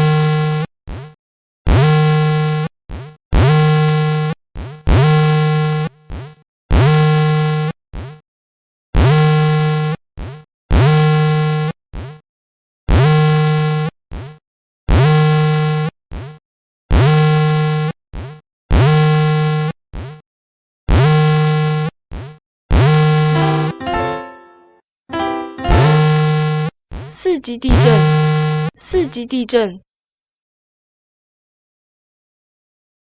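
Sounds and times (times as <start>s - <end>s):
short electronic blips: 23.2s - 26.7s
harsh buzzing alarm tone: 25.6s - 26.7s, 27.8s - 28.8s.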